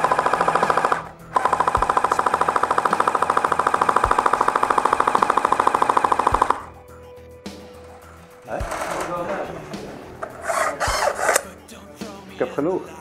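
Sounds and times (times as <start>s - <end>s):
airsoft rifle full-auto burst: 0.0s - 6.7s.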